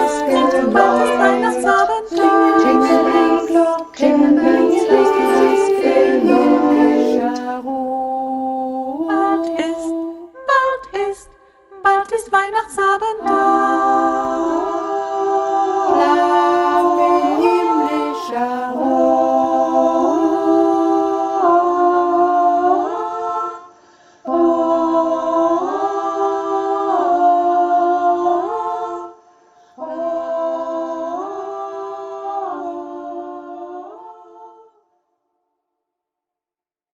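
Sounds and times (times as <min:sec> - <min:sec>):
women's choir singing a cappella: 0:00.0 - 0:34.9.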